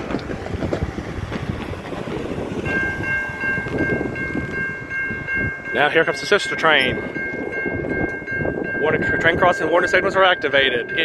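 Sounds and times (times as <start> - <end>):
freight train rumbling on rails: 0.0 - 11.0
railroad crossing bell ringing: 2.6 - 11.0.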